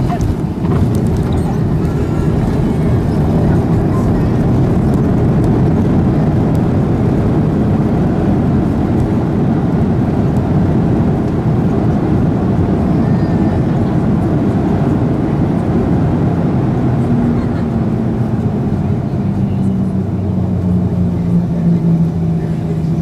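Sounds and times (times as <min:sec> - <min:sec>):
low rumble in aircraft cabin: 0:00.0 - 0:23.0.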